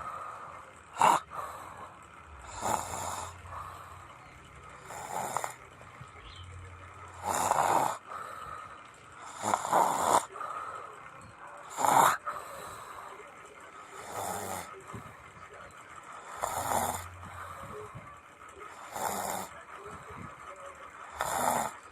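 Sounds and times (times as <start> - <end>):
person snoring: 1.0 - 4.1, 4.8 - 5.6, 7.2 - 8.1, 9.2 - 10.5, 11.7 - 12.8, 14.0 - 14.8, 16.2 - 17.9, 18.7 - 19.5, 21.1 - 21.9.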